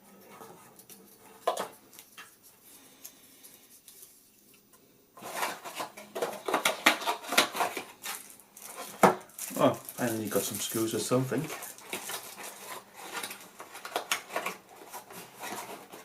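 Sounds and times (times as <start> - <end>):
small hard parts rattling: 5.2 - 16.0.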